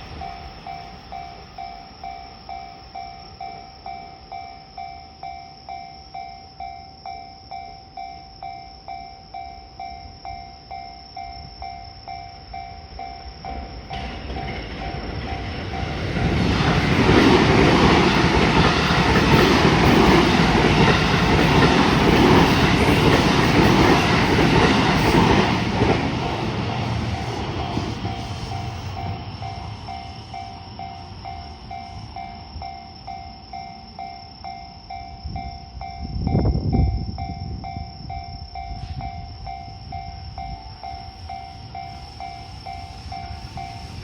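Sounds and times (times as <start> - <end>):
train rushing and rumbling: 0.0 - 4.6, 11.3 - 34.1, 34.9 - 44.0.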